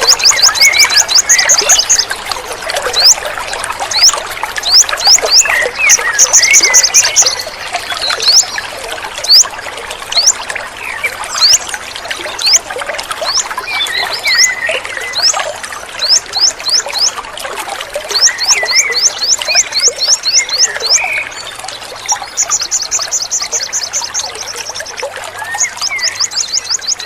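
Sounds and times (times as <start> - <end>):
water trickling and splashing: 0.0 - 27.0
lower bird chirps: 18.1 - 27.0.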